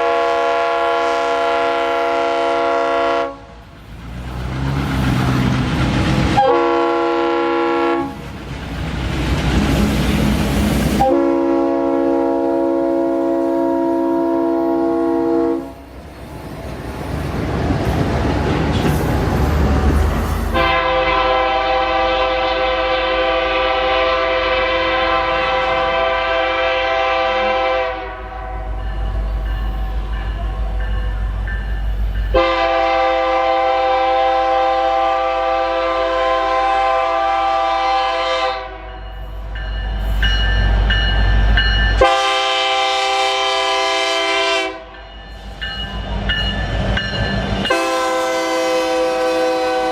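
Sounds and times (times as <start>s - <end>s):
locomotive horn blasts: 0.0s - 3.6s, 6.4s - 8.2s, 11.0s - 15.8s, 20.5s - 28.8s, 32.3s - 39.0s, 42.0s - 44.9s, 47.6s - 49.9s
train rumbling on rails: 0.0s - 49.9s.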